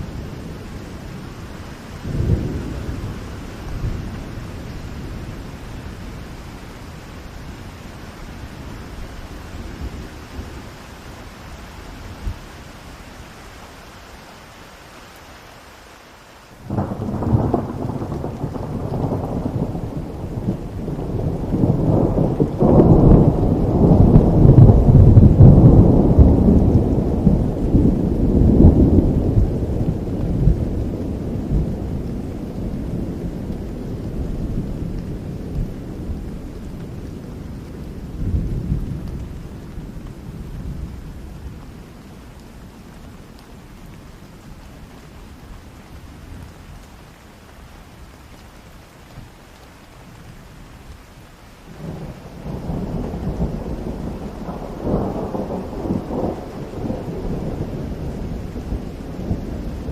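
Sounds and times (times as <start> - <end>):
thunder rumbling: 0.0 - 11.1, 16.6 - 43.0, 51.7 - 59.9
steady rain: 0.0 - 59.9.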